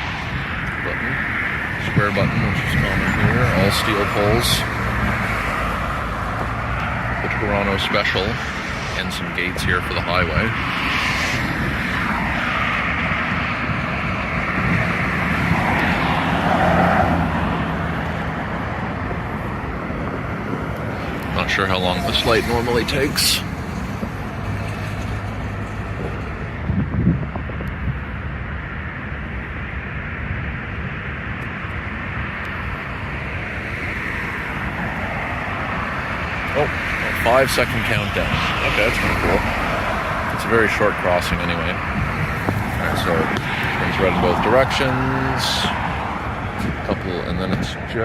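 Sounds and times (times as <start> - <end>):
engine noise: 0.0 - 48.0
traffic noise: 0.0 - 48.0.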